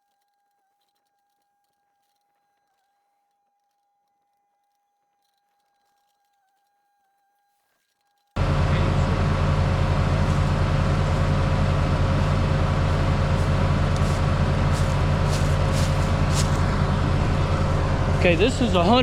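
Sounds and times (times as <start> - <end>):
diesel engine running: 8.4 - 19.0.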